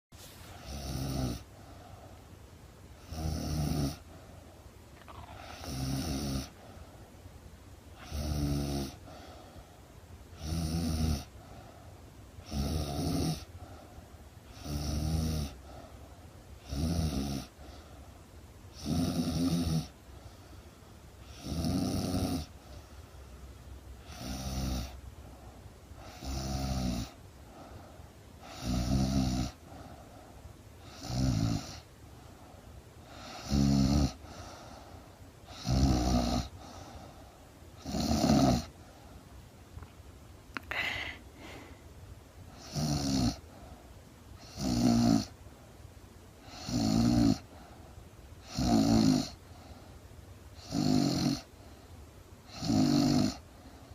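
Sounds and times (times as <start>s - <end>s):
woman snoring: 0.6s - 1.5s, 3.0s - 4.0s, 5.0s - 6.6s, 8.0s - 9.3s, 10.4s - 11.4s, 12.4s - 13.5s, 14.5s - 15.6s, 16.6s - 17.5s, 18.8s - 19.9s, 21.2s - 22.5s, 24.0s - 25.0s, 26.0s - 27.2s, 28.4s - 29.6s, 30.8s - 31.8s, 33.2s - 34.4s, 35.4s - 36.9s, 37.8s - 38.7s, 40.6s - 41.8s, 42.6s - 43.4s, 44.4s - 45.3s, 46.4s - 47.5s, 48.4s - 49.4s, 50.6s - 51.5s, 52.5s - 53.4s.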